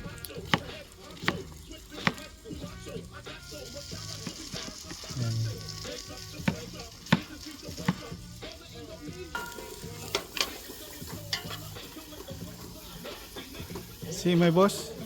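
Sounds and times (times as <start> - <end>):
onion and garlic sizzling: 0.0 - 15.0
utensil knocking against pot: 0.5 - 2.3, 9.3 - 10.5.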